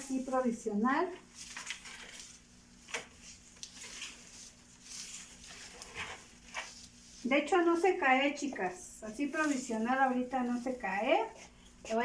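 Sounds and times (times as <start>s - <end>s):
low electrical hum: 0.0s - 12.0s
garland rustling: 8.6s - 12.0s.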